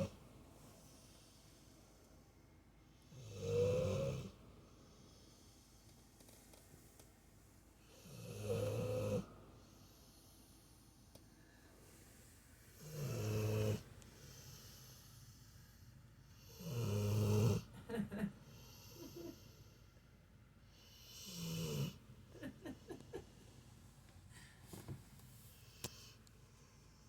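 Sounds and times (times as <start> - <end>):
dog snoring: 3.1 - 4.4, 7.8 - 10.2, 12.8 - 15.0, 16.4 - 17.7, 20.8 - 22.0.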